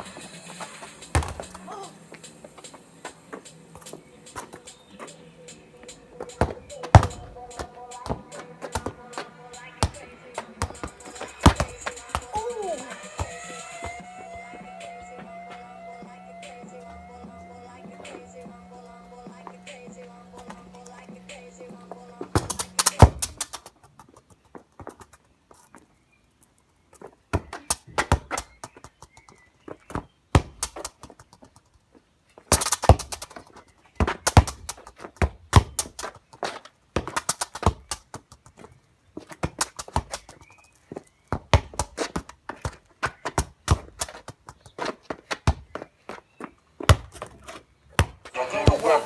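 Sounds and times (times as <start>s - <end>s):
irregular knocks and thuds: 1.1s - 1.6s.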